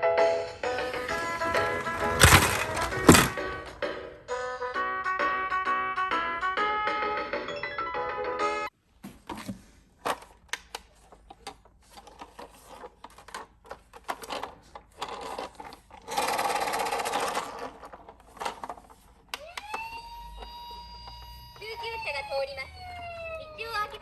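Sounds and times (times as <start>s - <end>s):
toy car rattle: 0.6s - 3.9s, 12.0s - 20.5s
plastic toy car clicking and clattering: 0.7s - 3.9s, 10.0s - 20.5s.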